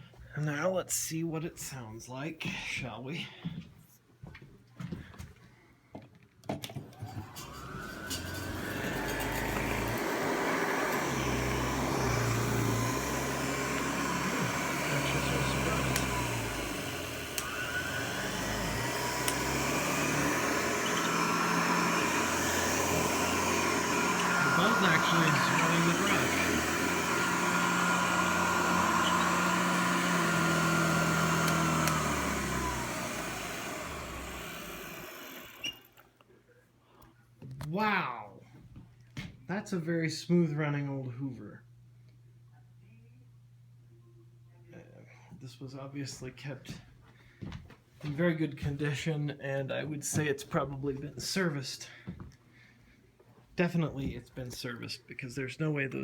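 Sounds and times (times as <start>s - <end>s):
vacuum cleaner motor running: 6.8s - 36.1s.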